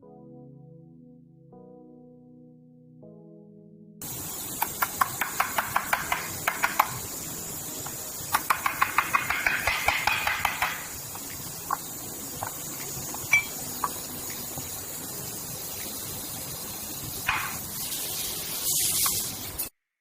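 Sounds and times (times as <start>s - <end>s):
metal tapping of hand tools: 4.6s - 7.0s, 8.3s - 11.8s.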